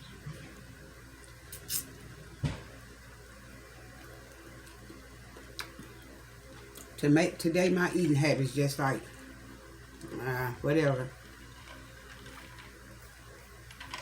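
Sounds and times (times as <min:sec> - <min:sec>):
low steady hum: 0:00.0 - 0:14.0
chewing and lip smacking: 0:04.0 - 0:06.0.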